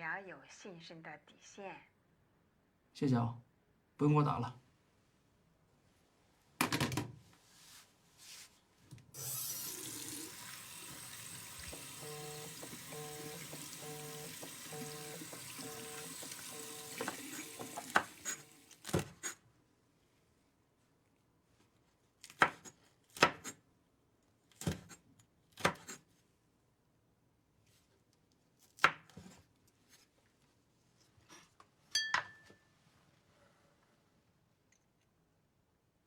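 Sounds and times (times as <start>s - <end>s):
crockery ringing: 32.0s - 32.5s
kitchenware knocks and clinks: 32.0s - 32.7s.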